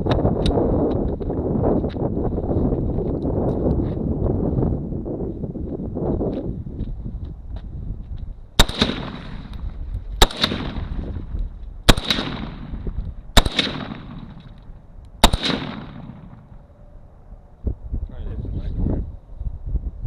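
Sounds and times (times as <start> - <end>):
rifle shots with echo: 8.6 - 9.6, 10.2 - 16.5.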